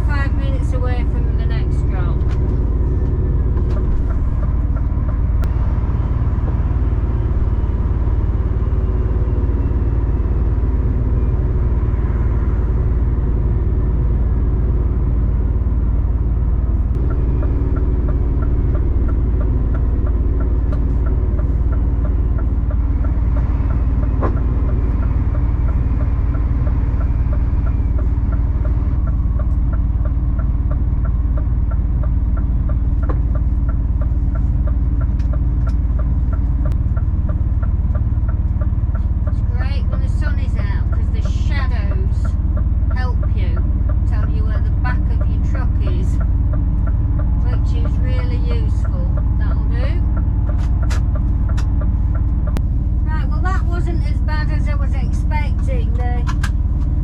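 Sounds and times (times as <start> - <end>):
lorry engine and road noise: 0.0 - 57.0
fast regular ticking: 16.8 - 53.6.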